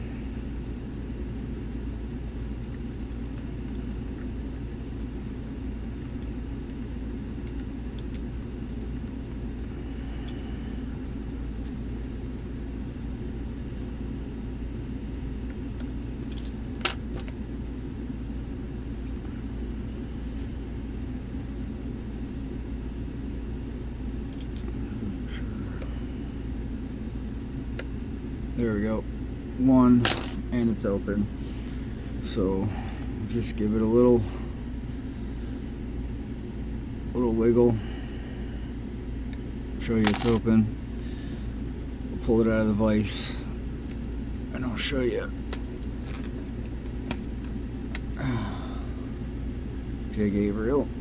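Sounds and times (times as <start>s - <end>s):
steady low hum: 0.0s - 51.0s.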